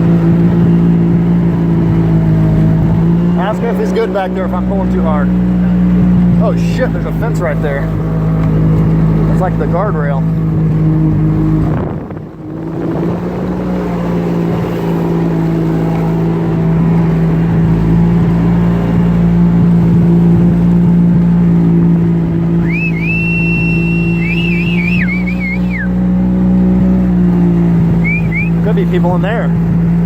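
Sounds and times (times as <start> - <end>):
vehicle engine running under load: 0.0 - 30.0
high wavering whine: 22.6 - 26.0.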